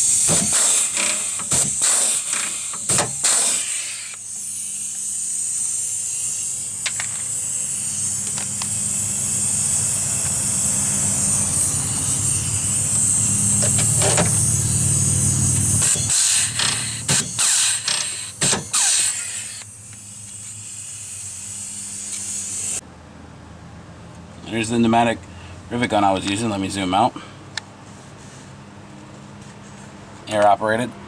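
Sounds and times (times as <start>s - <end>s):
air tool hissing: 0.0s - 22.8s
steady low hum: 0.0s - 23.0s.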